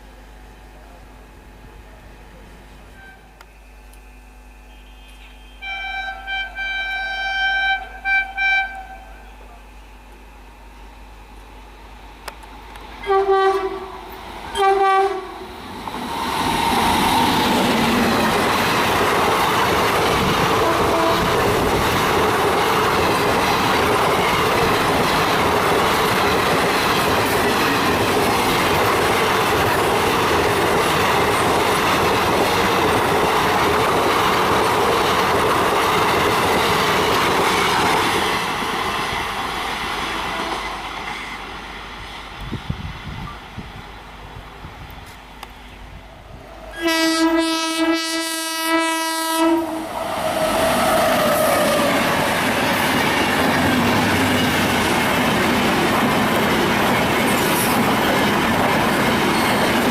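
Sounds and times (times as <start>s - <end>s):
train horn blasts: 2.8s - 3.4s, 4.5s - 9.6s, 13.0s - 15.5s, 20.4s - 21.5s, 40.1s - 40.8s, 46.7s - 50.0s
train passing at high speed: 11.6s - 59.9s.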